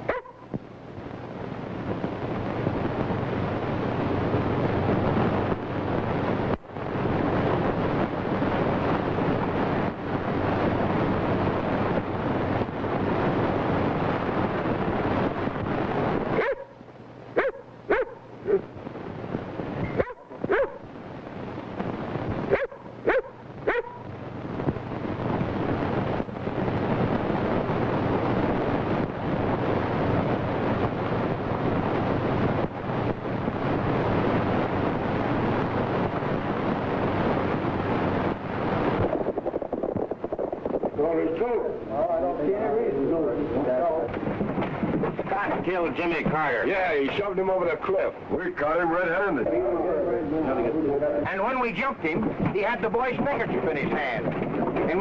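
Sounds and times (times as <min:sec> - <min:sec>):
dog barking in sharp yelps: 0:00.1 - 0:00.4, 0:16.4 - 0:16.8, 0:17.4 - 0:18.6, 0:20.0 - 0:20.8, 0:22.5 - 0:24.0.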